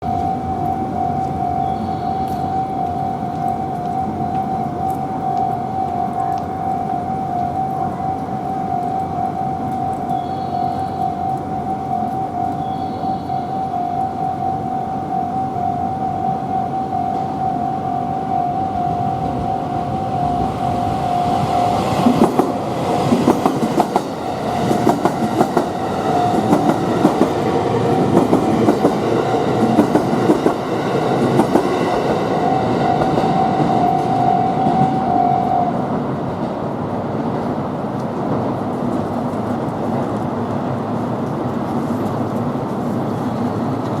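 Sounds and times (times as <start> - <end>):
level crossing warning signal: 0.0 - 36.4
train running rumble: 0.0 - 44.0
train wheels clacking over rail joints: 22.0 - 32.2.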